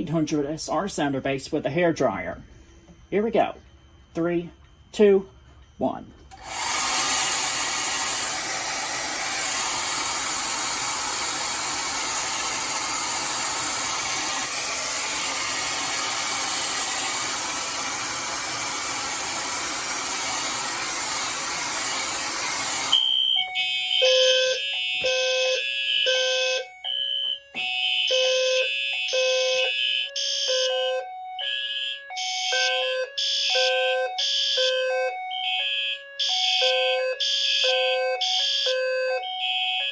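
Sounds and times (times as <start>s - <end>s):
fire alarm high beep: 0.0s - 6.4s, 9.4s - 39.9s
hair dryer blowing: 6.3s - 23.0s
pulsing fire alarm horns: 8.0s - 39.9s.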